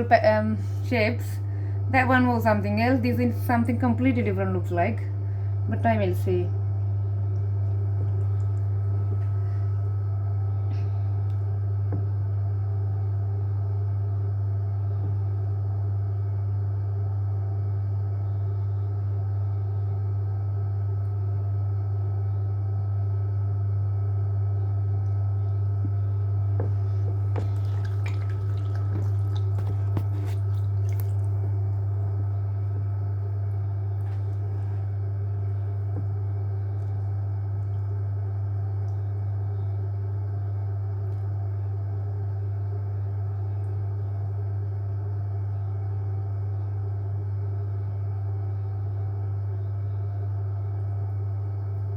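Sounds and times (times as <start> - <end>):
pottery wheel humming: 0.0 - 51.9
wet clay squishing: 26.6 - 32.2, 33.9 - 38.1.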